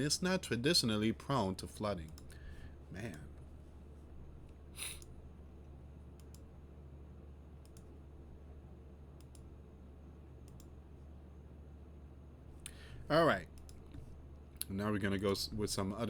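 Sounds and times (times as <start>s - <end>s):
steady low hum: 0.0s - 16.0s
computer clicks: 2.0s - 2.4s, 6.2s - 6.5s, 7.6s - 7.9s, 9.2s - 9.5s, 10.4s - 10.8s, 13.4s - 14.7s
short hiss: 4.8s - 5.1s.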